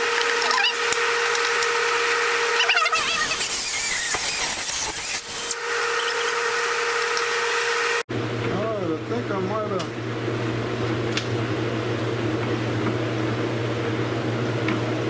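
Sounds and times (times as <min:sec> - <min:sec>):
die grinder cutting plastic: 0:00.0 - 0:07.5.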